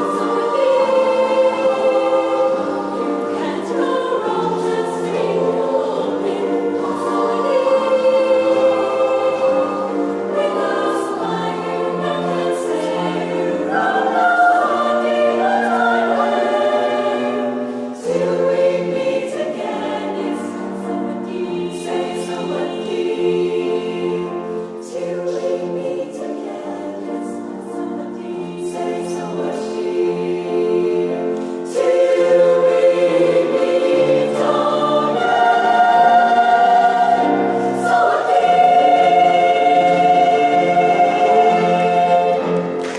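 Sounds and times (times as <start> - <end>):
choir singing: 0.0 - 42.9.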